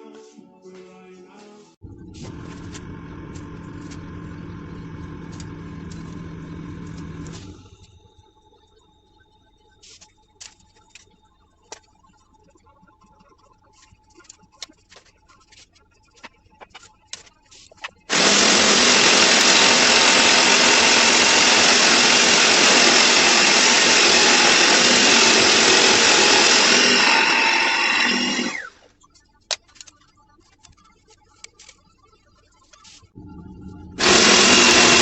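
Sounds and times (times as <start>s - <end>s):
power tool running: 2.2s - 7.9s, 18.1s - 28.7s, 33.3s - 35.0s.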